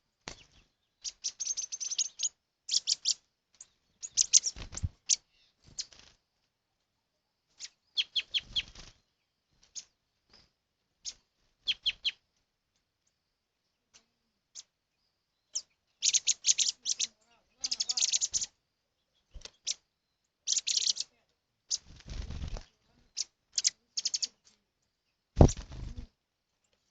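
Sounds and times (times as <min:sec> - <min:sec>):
birds chirping: 0:00.0 - 0:06.2, 0:07.5 - 0:12.3, 0:13.0 - 0:26.9.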